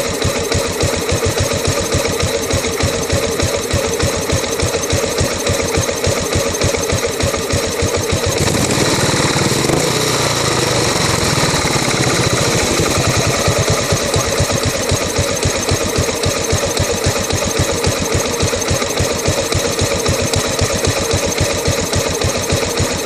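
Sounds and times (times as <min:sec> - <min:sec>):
motorcycle engine rough idle: 0:00.0 - 0:23.0.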